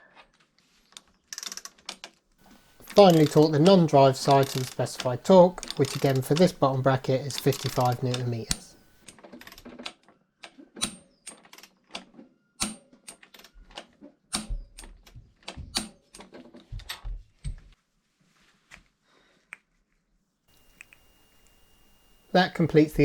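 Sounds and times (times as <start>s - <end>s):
ratcheting torque wrench clicking: 2.5s - 9.0s.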